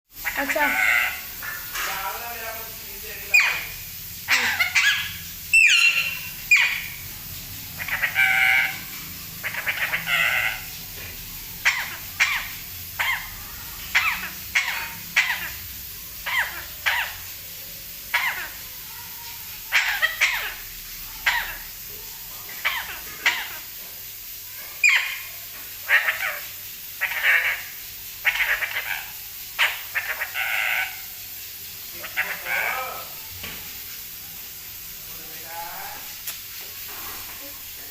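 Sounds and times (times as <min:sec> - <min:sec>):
parrot squawking: 0:00.2 - 0:07.1, 0:07.7 - 0:10.9, 0:11.5 - 0:17.4, 0:18.0 - 0:23.8, 0:24.6 - 0:33.3.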